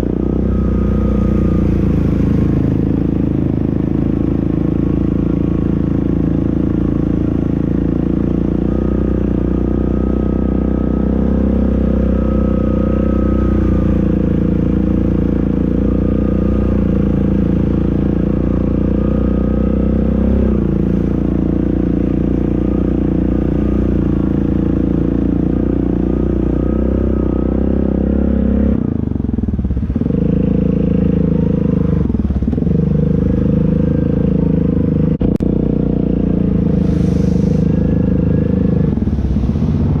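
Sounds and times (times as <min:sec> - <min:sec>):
steady whine: 0:00.0 - 0:04.9
atv engine revving: 0:00.0 - 0:40.0.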